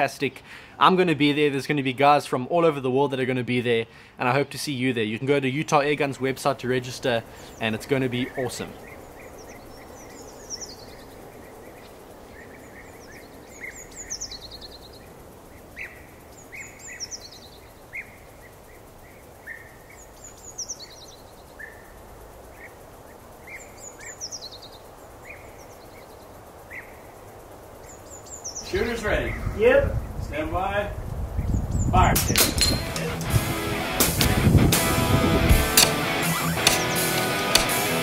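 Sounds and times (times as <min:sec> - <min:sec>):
steady background hiss: 0:00.0 - 0:38.0
bird singing falling song: 0:05.5 - 0:27.2, 0:27.8 - 0:29.6, 0:31.4 - 0:38.0
bird chirps: 0:07.0 - 0:29.6, 0:35.6 - 0:38.0.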